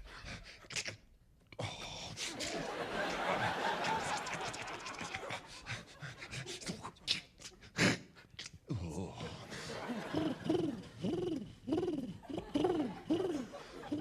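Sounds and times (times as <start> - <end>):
studio audience laughing: 2.3 - 6.5, 9.2 - 11.1, 12.1 - 14.0.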